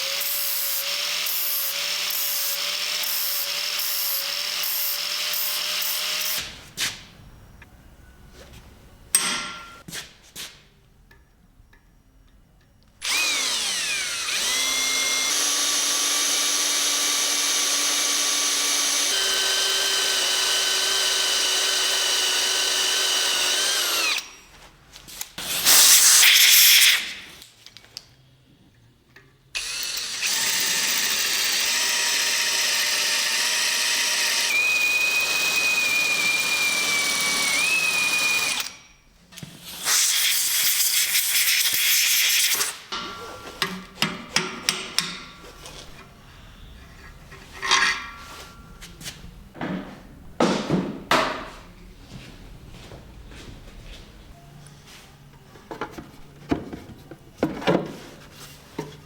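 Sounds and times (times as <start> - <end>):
electric drill running: 0.0 - 6.4, 13.0 - 24.3, 29.6 - 38.8.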